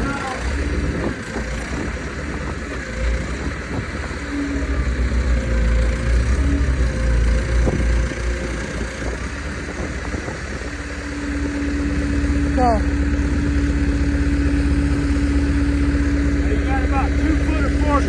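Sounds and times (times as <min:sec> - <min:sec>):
tractor engine running: 0:00.0 - 0:18.0
wind rumbling on microphone: 0:00.0 - 0:18.0.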